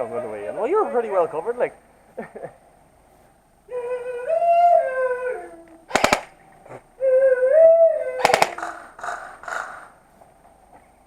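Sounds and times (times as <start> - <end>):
rapid airsoft gunshots: 5.9 - 6.3, 8.2 - 8.8.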